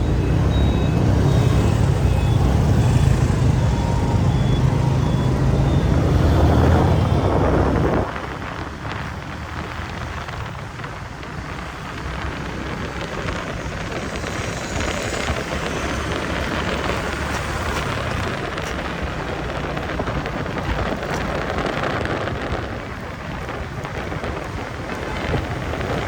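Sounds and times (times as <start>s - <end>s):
road traffic rushing hiss: 0.0s - 26.0s.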